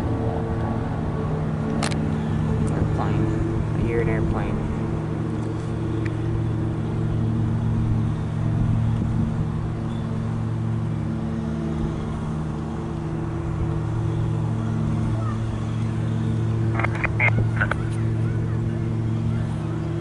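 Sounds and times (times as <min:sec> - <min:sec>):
low engine hum: 0:00.0 - 0:20.0.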